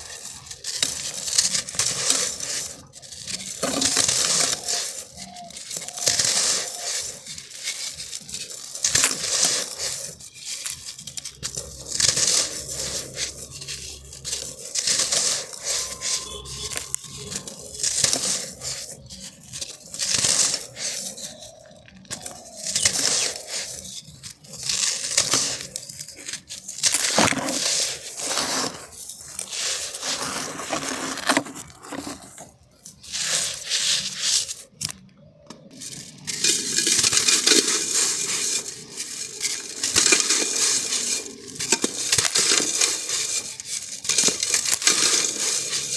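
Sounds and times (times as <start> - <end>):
sand crunching by hand: 0.0 - 35.0.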